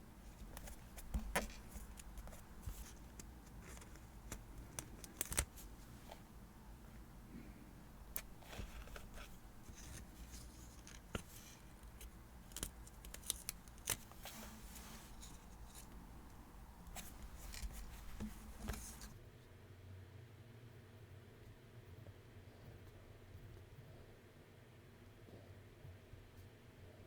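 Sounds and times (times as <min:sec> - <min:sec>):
scissors snipping paper: 0:00.3 - 0:05.5, 0:08.2 - 0:14.2
paper rustling and clicks: 0:00.3 - 0:06.2, 0:08.1 - 0:16.0, 0:16.9 - 0:19.2.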